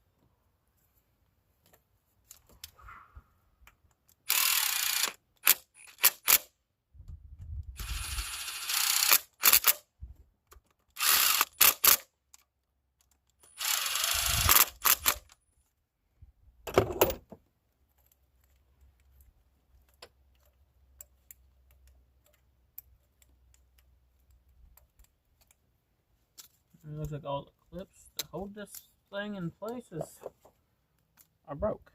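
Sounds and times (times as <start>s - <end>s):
power tool whirring: 4.3s - 6.4s, 7.8s - 9.8s, 11.0s - 12.1s, 13.4s - 15.3s.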